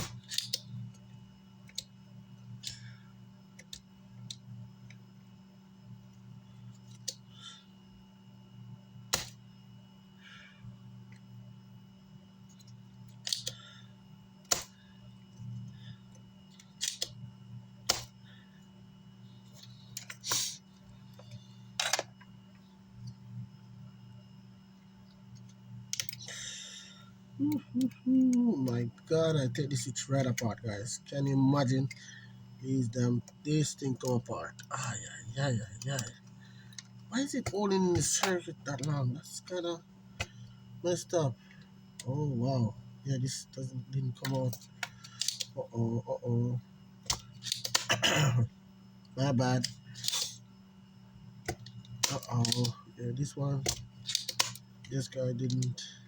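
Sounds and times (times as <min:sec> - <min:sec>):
low electrical hum: 0:00.0 - 0:56.0
sharp scraping click: 0:50.0 - 0:50.4.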